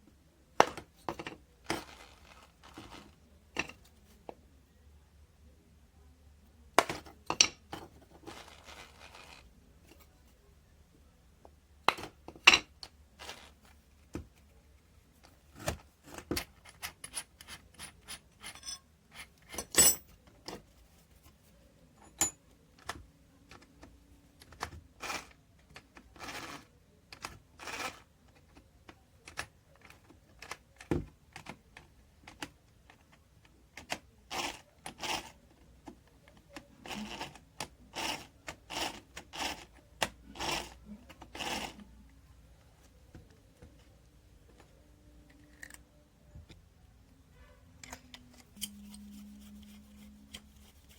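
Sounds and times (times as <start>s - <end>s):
small tools clinking and tapping: 16.1s - 20.6s, 22.0s - 22.4s.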